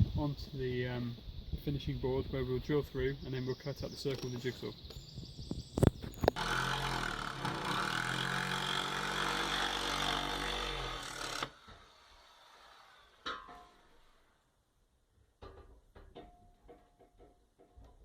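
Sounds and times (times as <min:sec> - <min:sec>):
power tool cutting timber: 0:06.3 - 0:14.3.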